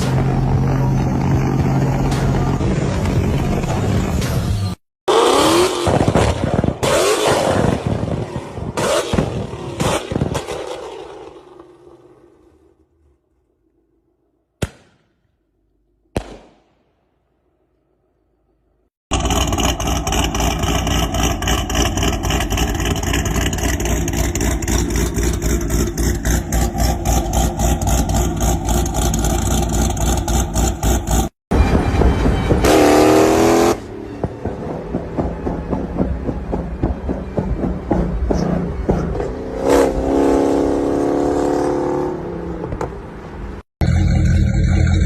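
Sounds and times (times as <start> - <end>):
engine revving up: 5.1 - 11.4
exhaust popping and revving: 5.1 - 11.4, 19.1 - 31.4.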